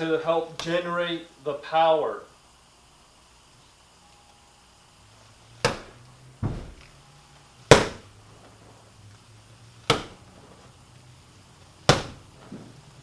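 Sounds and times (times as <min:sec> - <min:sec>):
hammer fist strike snaps: 0:05.6 - 0:06.6, 0:07.7 - 0:08.0, 0:09.9 - 0:10.2, 0:11.9 - 0:12.2.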